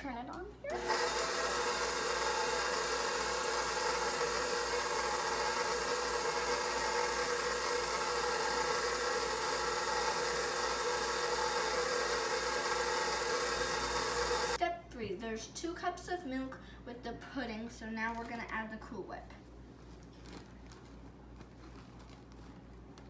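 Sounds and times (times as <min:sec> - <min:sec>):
electric mixer running: 0:00.6 - 0:14.6.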